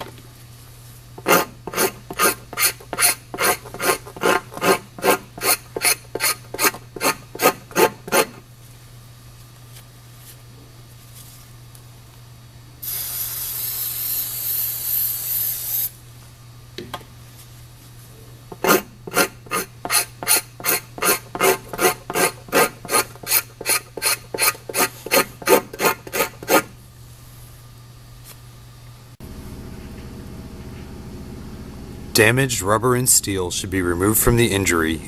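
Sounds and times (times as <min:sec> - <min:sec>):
rubber scraper scraping: 0:01.2 - 0:08.4, 0:18.5 - 0:26.7
aerosol spray hiss: 0:12.8 - 0:15.9.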